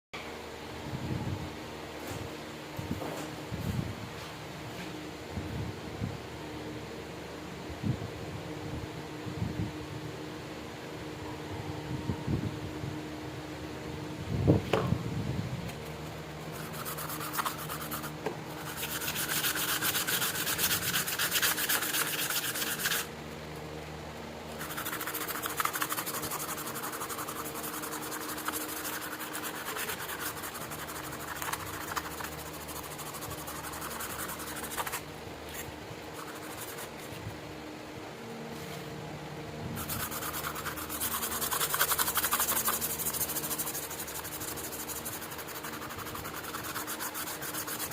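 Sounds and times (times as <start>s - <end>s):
faint steady hum: 0.2s - 47.9s
abrasive rubbing on knife blade: 16.4s - 23.1s.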